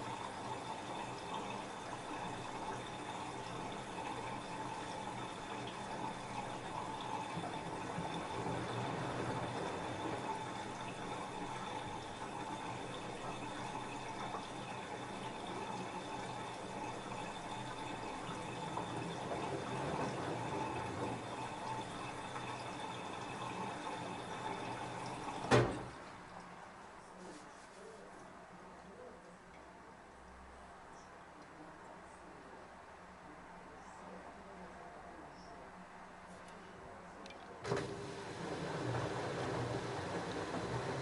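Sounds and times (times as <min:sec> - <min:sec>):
water rushing into washing machine: 0:00.0 - 0:26.4, 0:37.6 - 0:41.0.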